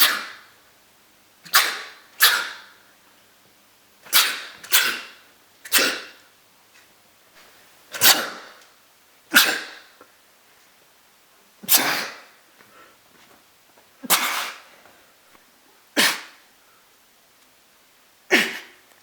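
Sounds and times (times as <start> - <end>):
person sneezing: 0.0 - 0.5, 1.4 - 2.8, 4.1 - 6.3, 7.9 - 8.6, 9.3 - 10.0, 11.6 - 12.4, 14.0 - 14.7, 16.0 - 16.4, 18.3 - 18.8.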